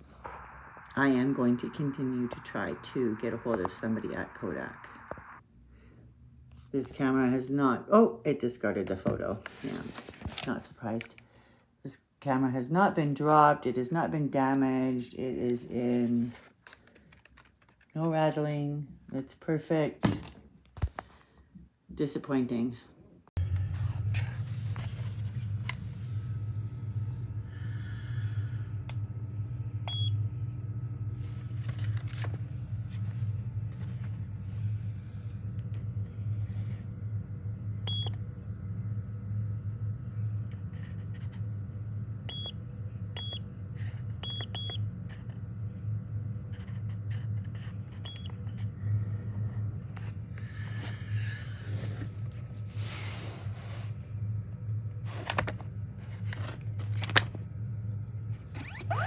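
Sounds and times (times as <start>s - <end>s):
steady low hum: 0.0s - 7.9s, 23.2s - 59.0s.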